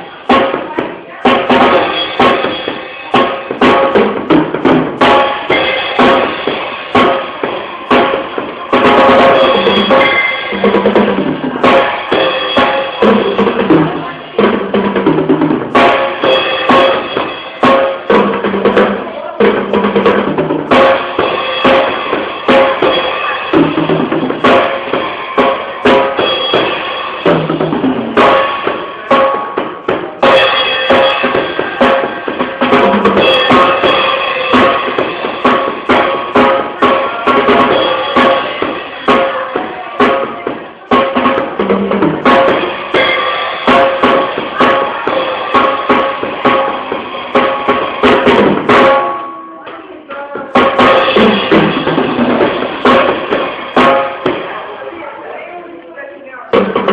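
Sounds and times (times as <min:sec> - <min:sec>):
cymbal crashes: 0:00.0 - 0:55.2
bass drum hits: 0:00.3 - 0:49.5.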